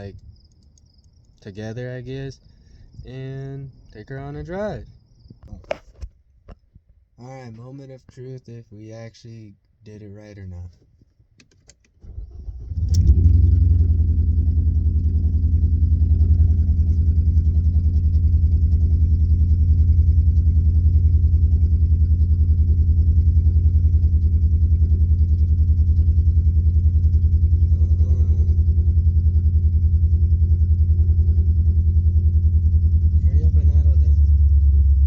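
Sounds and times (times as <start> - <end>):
car engine starting: 11.4 - 35.0
car engine idling rough: 12.0 - 35.0.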